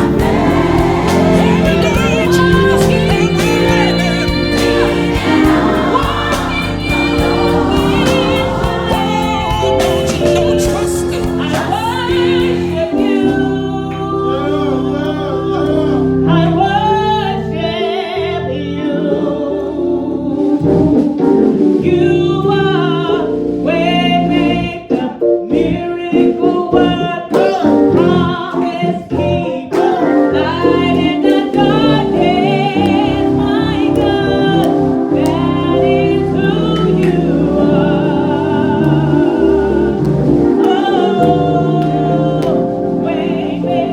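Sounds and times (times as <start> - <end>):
steady beat: 0.0 - 13.5
gospel voices singing: 0.0 - 43.9
keyboard or organ chords: 0.0 - 43.9.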